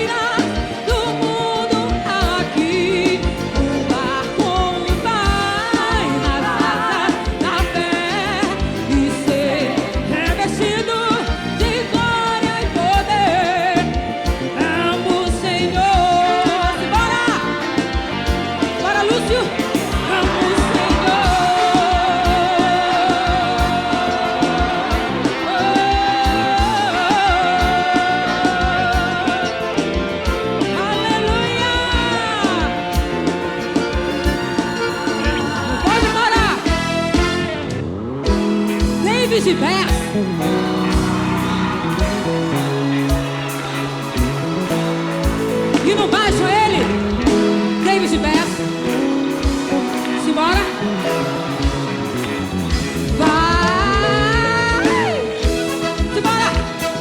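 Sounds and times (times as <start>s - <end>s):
live band music: 0.0s - 57.0s
steady drum beat: 0.0s - 57.0s.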